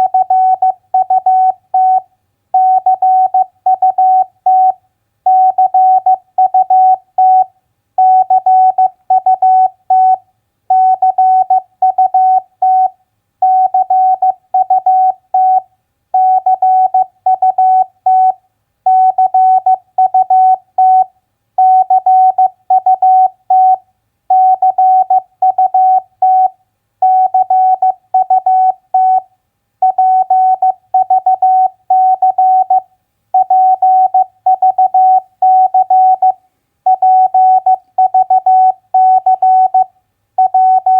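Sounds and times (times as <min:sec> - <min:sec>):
morse code beep tone: 0:00.0 - 0:02.0, 0:16.2 - 0:29.2, 0:29.8 - 0:32.8, 0:33.4 - 0:40.9.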